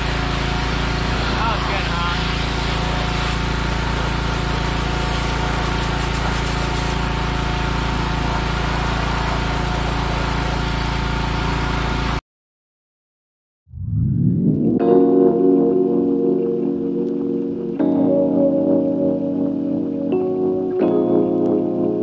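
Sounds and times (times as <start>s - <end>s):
spray hissing: 0.0s - 7.3s
pressure washer motor drone: 0.0s - 12.2s.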